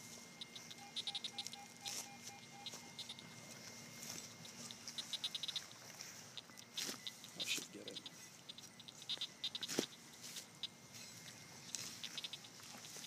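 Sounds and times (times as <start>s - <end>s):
high chirping trills: 0.0s - 13.0s
metal detector beeping: 0.0s - 13.0s.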